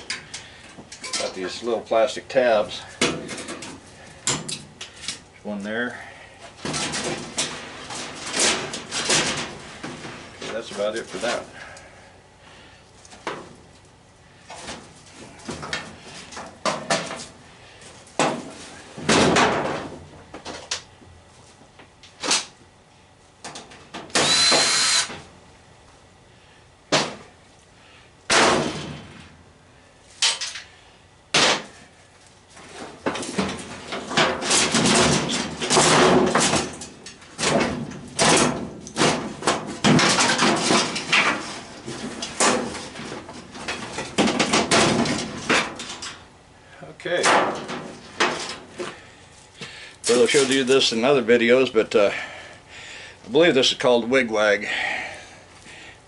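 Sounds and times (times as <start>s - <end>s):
tools being handled: 0.9s - 1.6s
washing machine parts clattering: 1.0s - 1.6s
knocks and scrapes: 6.6s - 11.4s.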